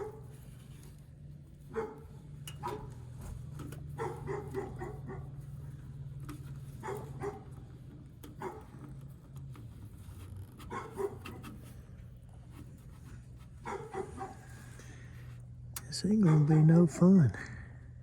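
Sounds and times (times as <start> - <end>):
steady low hum: 0.0 - 18.0
dog barking: 1.7 - 2.0, 2.6 - 2.9, 4.0 - 5.4, 6.8 - 7.6, 8.4 - 8.8, 10.7 - 11.5, 13.6 - 14.6, 16.1 - 17.0.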